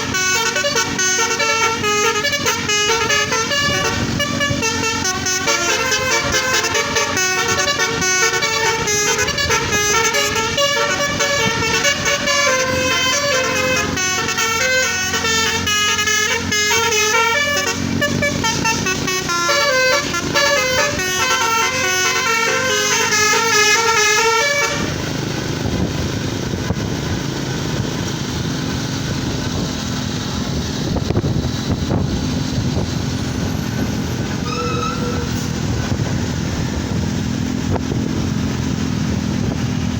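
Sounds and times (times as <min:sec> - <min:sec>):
musical vehicle horn melody: 0:00.0 - 0:25.1, 0:33.2 - 0:36.7
road noise: 0:00.0 - 0:39.9
vehicle engine: 0:00.0 - 0:39.9.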